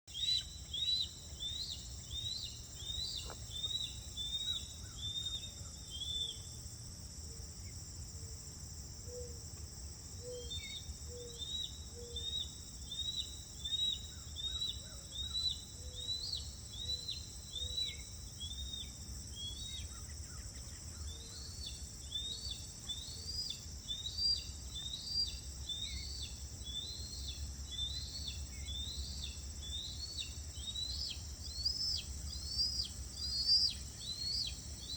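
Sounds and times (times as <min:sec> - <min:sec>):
bird chirping: 0:00.1 - 0:06.6, 0:10.1 - 0:34.9
insect chorus droning: 0:00.1 - 0:34.9.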